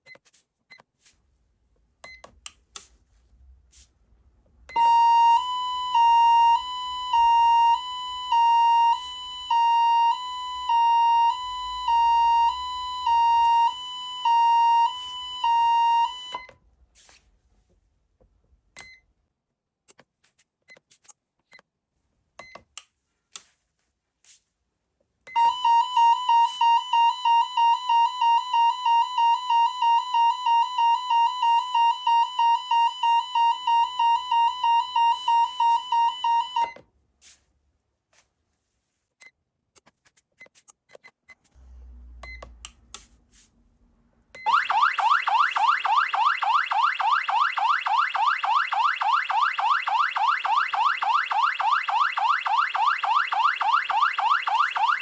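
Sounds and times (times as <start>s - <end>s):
two-tone hi-lo siren: 4.7s - 16.5s, 25.4s - 36.8s, 44.4s - 55.0s
fast pulsing siren tone: 44.5s - 55.0s.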